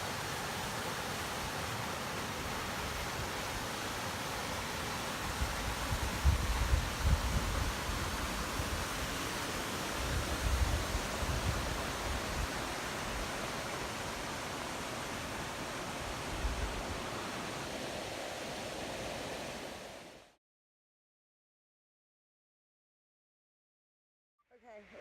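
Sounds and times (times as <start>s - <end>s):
rushing water: 0.0s - 20.4s
wind buffeting the microphone: 5.3s - 9.1s, 10.0s - 13.3s.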